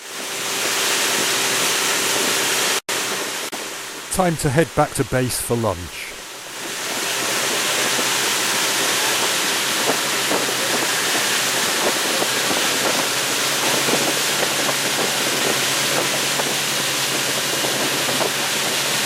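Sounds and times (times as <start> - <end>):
rush of wind and water: 0.0 - 19.0
boat motor running: 6.3 - 19.0.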